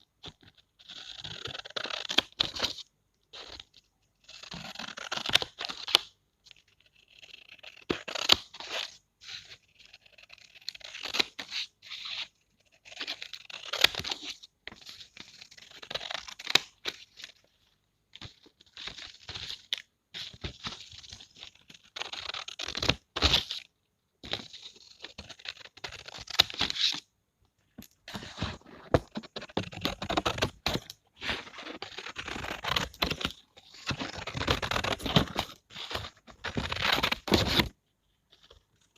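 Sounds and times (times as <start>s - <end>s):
scissors cutting paper: 28.2s - 37.7s.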